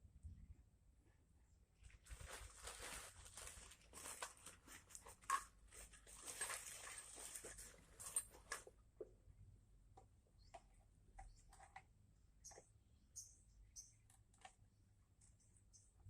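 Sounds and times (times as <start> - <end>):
faint rustling and scraping: 1.8 - 8.8.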